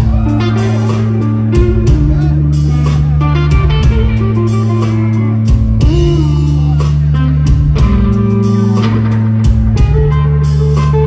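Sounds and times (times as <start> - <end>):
bass line: 0.0 - 11.0
blues-rock band playing: 0.0 - 11.0
electric guitar lead: 0.0 - 11.0.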